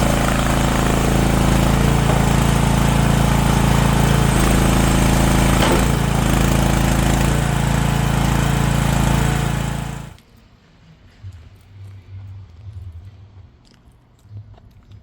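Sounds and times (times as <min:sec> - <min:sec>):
skid steer engine running: 0:00.0 - 0:10.2.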